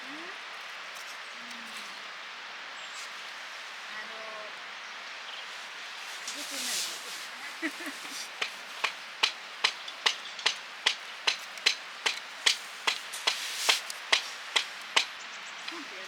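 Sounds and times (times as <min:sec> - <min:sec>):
sharp striking blows: 0:08.4 - 0:15.2.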